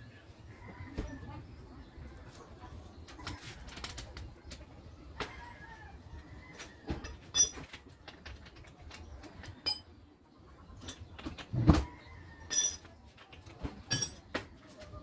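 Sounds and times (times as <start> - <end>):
metal tools clinking: 7.0 - 7.7, 9.5 - 9.8, 12.5 - 12.9, 13.9 - 14.2.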